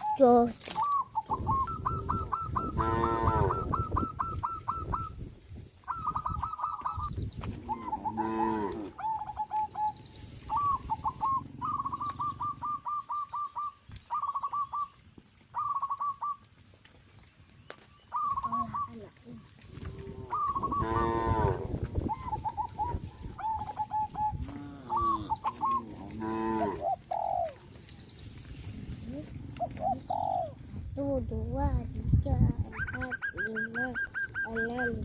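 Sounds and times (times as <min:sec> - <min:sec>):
longer lower bird calls: 0:00.0 - 0:16.6, 0:17.3 - 0:30.7, 0:32.7 - 0:35.0
fowl calling high notes: 0:07.7 - 0:16.4, 0:20.2 - 0:27.1.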